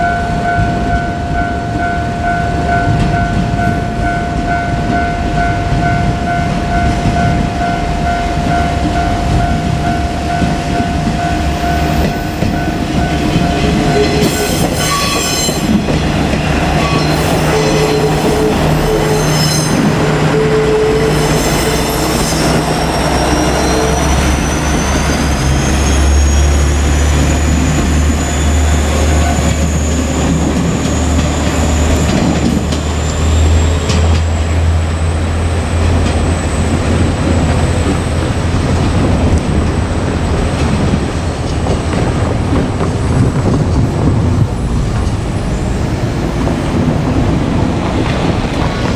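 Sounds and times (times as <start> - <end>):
diesel engines droning: 0.0 - 48.9
wheels running on rails: 0.1 - 48.9
high wheel squeal: 6.3 - 34.3.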